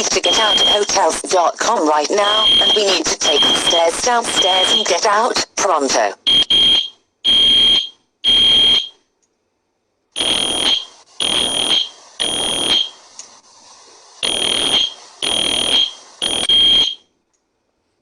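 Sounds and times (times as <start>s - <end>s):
fire alarm buzzing beeps: 0.2s - 1.0s, 2.2s - 5.0s, 6.3s - 9.0s, 10.2s - 13.0s, 14.2s - 17.1s.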